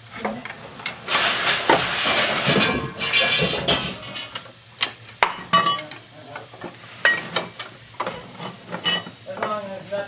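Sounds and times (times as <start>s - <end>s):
scraping and rattling: 0.0s - 4.4s
metal tools clanking: 0.2s - 4.5s, 7.0s - 9.6s.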